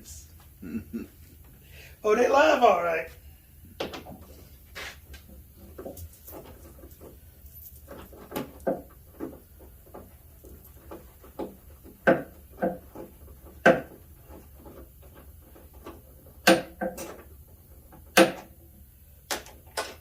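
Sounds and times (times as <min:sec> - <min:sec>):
low steady hum: 0:00.0 - 0:19.9
knocks and clicks of hard parts: 0:03.8 - 0:04.3, 0:07.9 - 0:18.6, 0:19.2 - 0:20.0.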